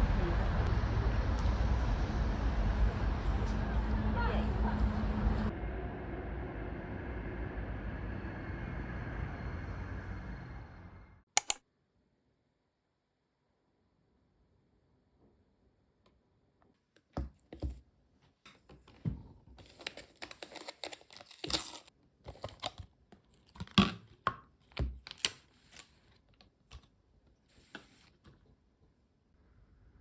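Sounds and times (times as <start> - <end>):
clicks and taps of handling: 11.4 - 11.6
crinkly rustling: 19.6 - 23.6.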